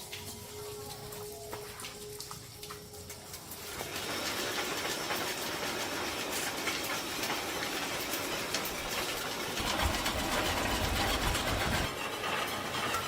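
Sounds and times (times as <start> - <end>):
mechanical clattering: 6.9 - 13.0.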